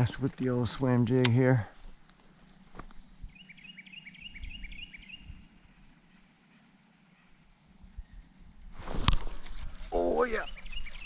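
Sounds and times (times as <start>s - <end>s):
insects chorus: 0.0s - 11.0s
bird chirping: 3.2s - 5.8s, 9.8s - 11.0s.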